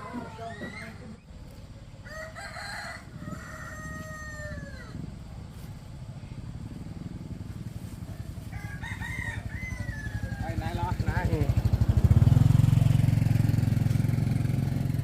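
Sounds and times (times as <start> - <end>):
rooster crowing: 2.0 - 5.1, 8.2 - 11.0
engine low throb: 3.1 - 15.0.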